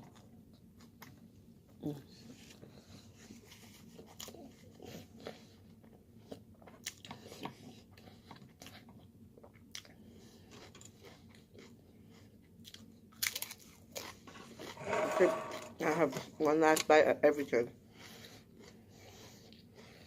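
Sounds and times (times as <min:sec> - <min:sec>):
person chewing food: 0:02.3 - 0:14.9, 0:18.0 - 0:20.0.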